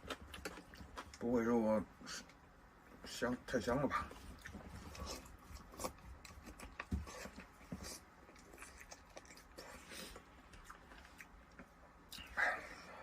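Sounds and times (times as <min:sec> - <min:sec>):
chewing and biting chicken: 0:04.1 - 0:12.3.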